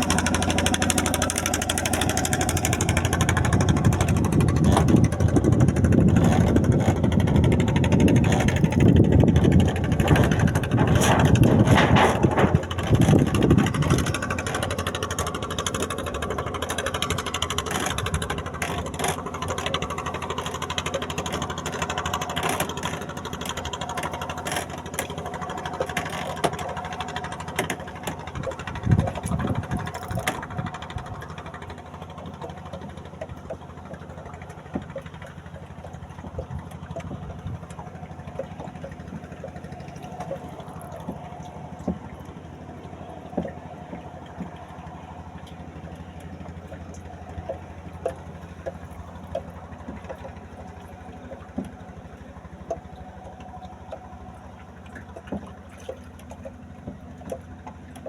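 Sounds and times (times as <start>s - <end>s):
boat engine running: 0.0s - 58.0s
clicks and knocks: 9.7s - 14.8s.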